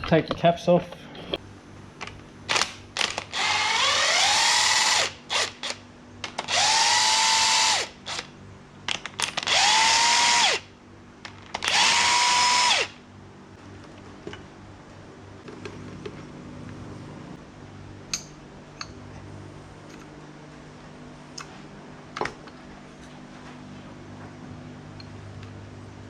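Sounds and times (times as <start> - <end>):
cordless power tool spinning up: 3.3 - 5.8, 6.5 - 8.3, 9.5 - 10.6, 11.6 - 12.9.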